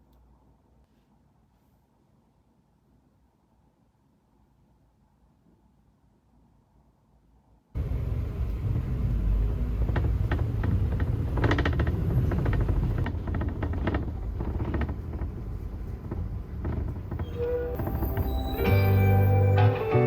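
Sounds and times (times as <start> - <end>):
steady low rumble: 7.8 - 17.2.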